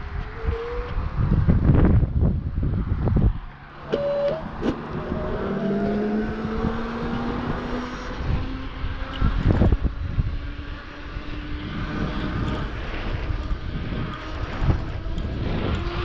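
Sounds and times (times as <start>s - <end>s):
wind gusts on microphone: 0.0s - 16.0s
motor hum rising in pitch: 3.8s - 16.0s.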